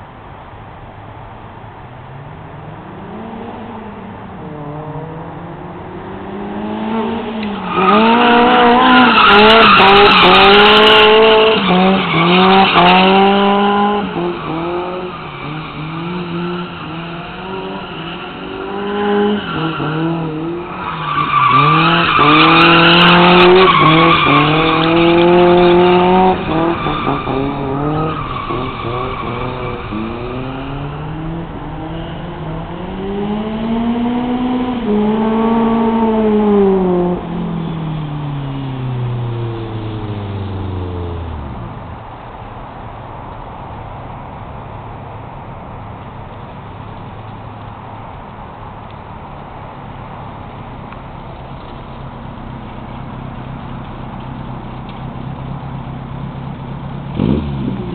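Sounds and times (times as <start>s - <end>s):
car engine revving and shifting: 2.0s - 42.2s, 54.6s - 57.9s.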